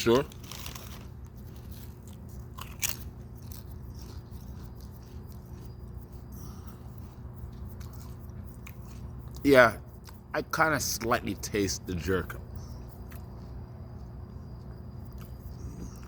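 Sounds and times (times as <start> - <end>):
person crunching potato chips: 0.0 - 9.4.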